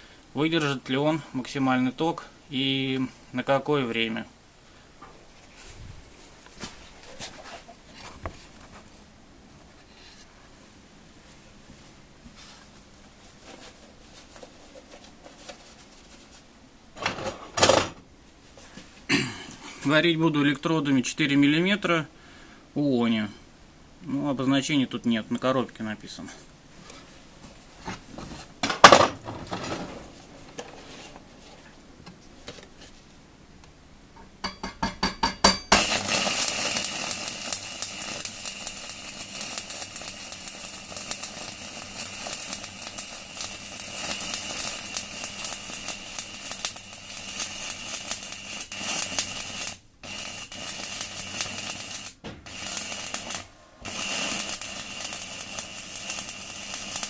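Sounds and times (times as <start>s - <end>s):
welding arc crackling and hissing: 0.0s - 8.6s, 35.7s - 57.0s.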